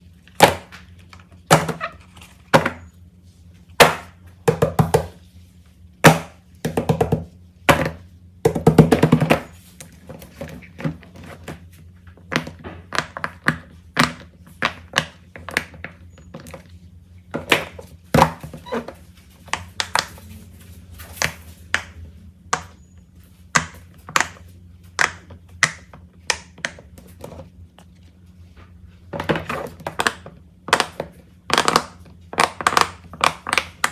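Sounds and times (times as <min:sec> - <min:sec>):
plastic toys tapping and clicking: 0:25.0 - 0:27.1, 0:29.2 - 0:33.9.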